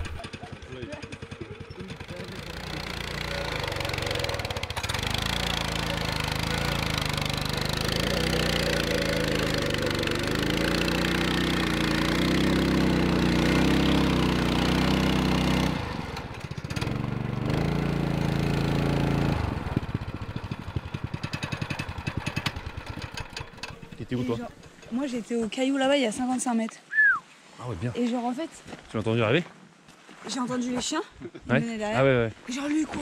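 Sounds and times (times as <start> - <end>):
engine running: 0.0 - 25.3.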